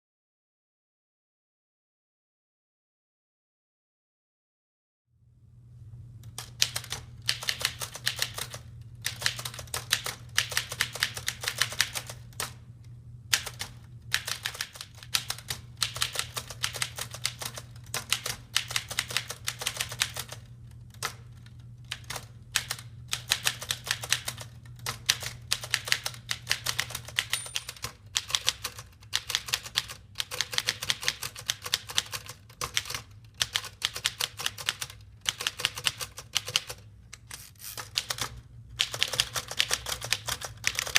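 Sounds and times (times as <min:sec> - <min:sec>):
steady low hum: 0:05.2 - 0:40.9
typewriter key strikes: 0:21.9 - 0:36.8.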